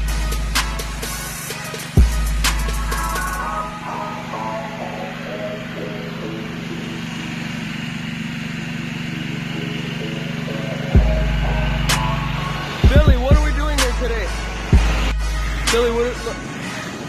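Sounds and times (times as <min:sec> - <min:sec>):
hip-hop music: 0:00.0 - 0:17.0
pressure washer engine running: 0:00.0 - 0:17.0.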